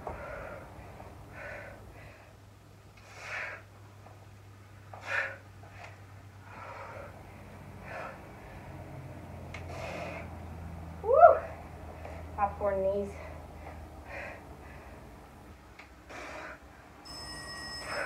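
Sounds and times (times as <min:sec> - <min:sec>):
woman breathing hard: 0:00.0 - 0:03.8, 0:04.9 - 0:08.9, 0:09.6 - 0:10.7, 0:11.4 - 0:12.4, 0:13.1 - 0:16.9, 0:17.8 - 0:18.0.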